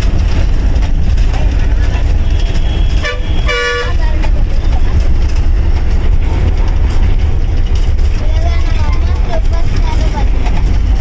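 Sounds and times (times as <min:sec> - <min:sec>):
bus engine and road rumble: 0:00.0 - 0:11.0
vehicle horn tooting: 0:02.2 - 0:04.0.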